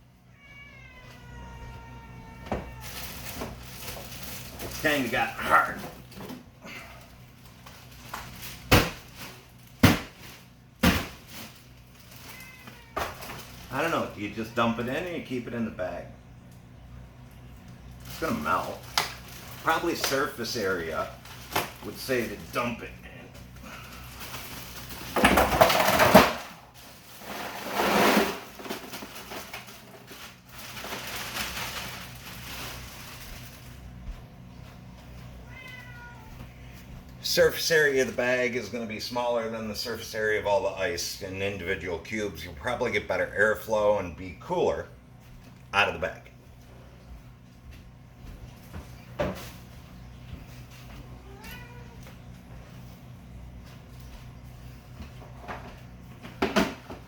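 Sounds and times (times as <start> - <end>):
bag of ice slammed down: 8.5 - 9.2, 9.8 - 11.5, 24.9 - 26.6, 27.2 - 29.7
ice cubes clattering into bucket: 24.2 - 26.5, 27.1 - 33.1.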